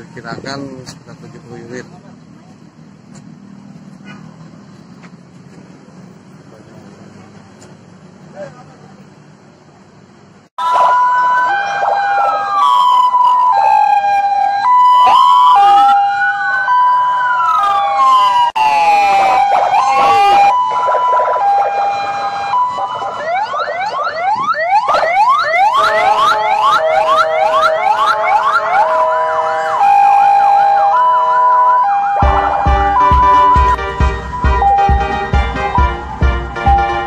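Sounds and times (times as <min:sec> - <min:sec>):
fast yelp siren: 0:10.6 - 0:37.0
two-tone hi-lo siren: 0:10.6 - 0:37.0
wailing siren: 0:10.6 - 0:37.0.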